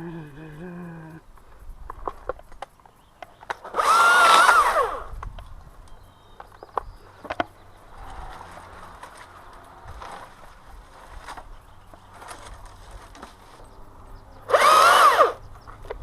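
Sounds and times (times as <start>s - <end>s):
chainsaw revving: 3.5s - 5.1s, 14.4s - 15.5s.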